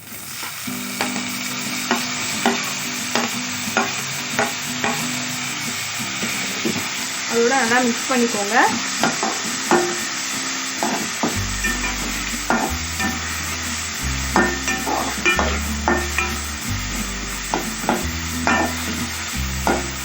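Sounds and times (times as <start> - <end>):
onions sizzling in a pan: 0.0 - 20.0
background music: 11.4 - 20.0
spatula scraping a pan: 11.6 - 16.6, 17.5 - 19.9.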